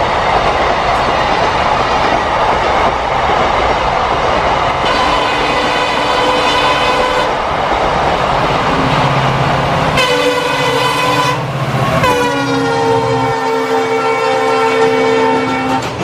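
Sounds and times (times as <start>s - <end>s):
train running past: 0.0s - 16.0s
locomotive horn blasts: 4.8s - 7.4s, 10.0s - 16.0s.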